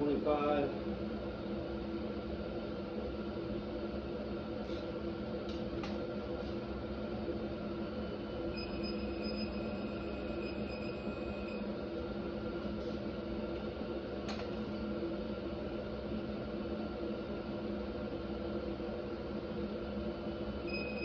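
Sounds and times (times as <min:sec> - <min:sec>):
steady hum: 0:00.0 - 0:21.0
high steady beep: 0:08.5 - 0:11.6, 0:20.7 - 0:21.0.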